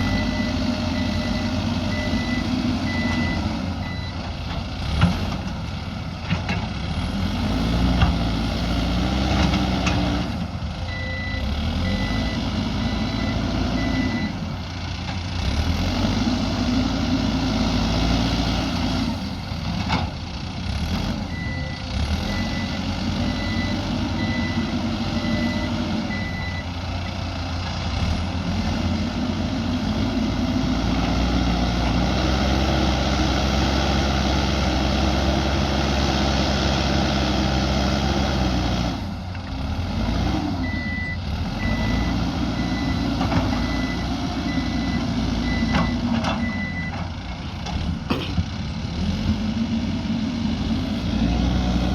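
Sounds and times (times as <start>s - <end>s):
reversing alarm beeping: 0.0s - 4.2s, 10.9s - 14.5s, 21.3s - 26.7s, 40.6s - 47.0s
diesel engine under load: 0.0s - 51.9s.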